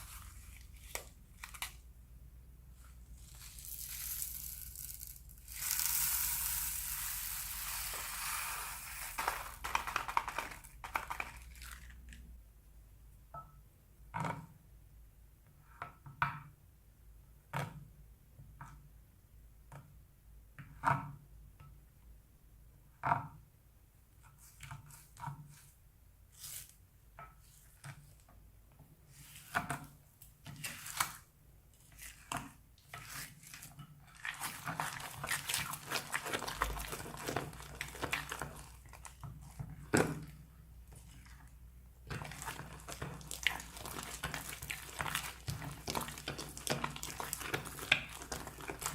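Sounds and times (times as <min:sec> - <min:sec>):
plastic bags crinkling: 0:08.8 - 0:12.2, 0:34.1 - 0:39.6, 0:42.1 - 0:48.9
slime squelching and popping: 0:33.0 - 0:40.4, 0:41.0 - 0:48.9.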